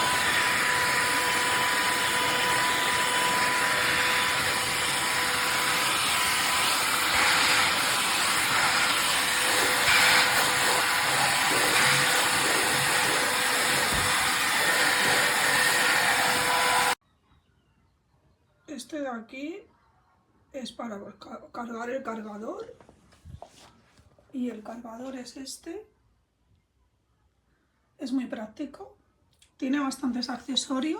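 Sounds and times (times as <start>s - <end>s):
handheld vacuum running: 0.0s - 17.0s.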